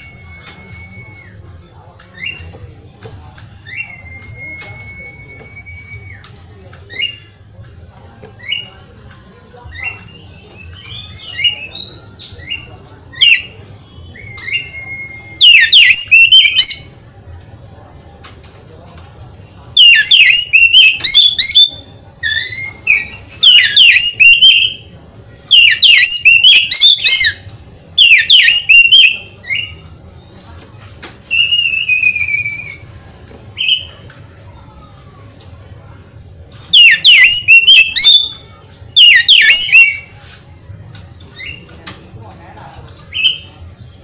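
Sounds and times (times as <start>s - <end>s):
bird singing whistled phrases: 0.0s - 1.4s, 2.1s - 2.5s, 3.6s - 7.3s, 9.7s - 16.9s, 19.8s - 24.8s, 25.5s - 27.4s, 28.0s - 29.8s, 31.3s - 33.0s, 33.6s - 34.0s, 36.7s - 40.1s, 43.1s - 43.6s.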